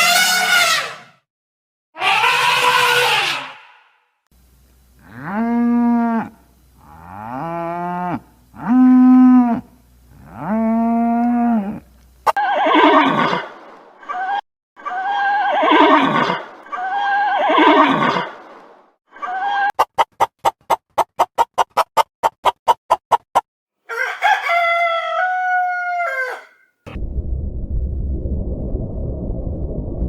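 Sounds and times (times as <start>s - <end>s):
cattle mooing: 5.0s - 11.8s
horse whinnying: 26.0s - 26.6s.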